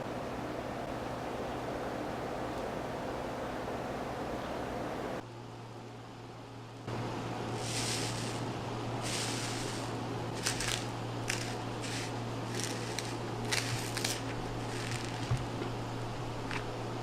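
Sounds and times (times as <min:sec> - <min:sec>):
steady low hum: 0:00.0 - 0:17.0
handling scrapes and clicks: 0:09.0 - 0:15.5.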